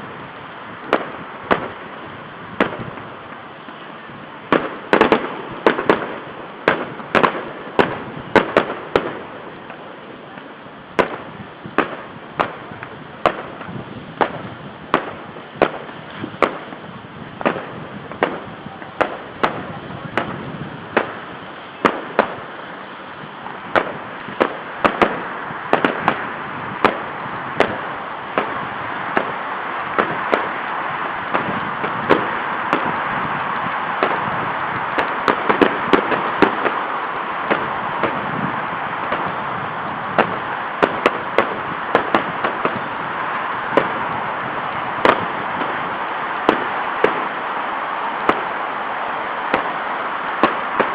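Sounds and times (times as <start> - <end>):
background rumble: 0.0 - 50.9
firework bangs: 0.0 - 50.9.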